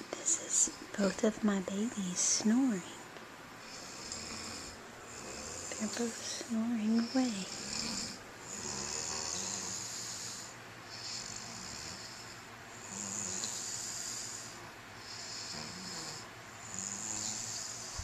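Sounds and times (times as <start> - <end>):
man snoring: 3.6 - 6.2, 7.0 - 18.0
child snoring: 3.6 - 18.0.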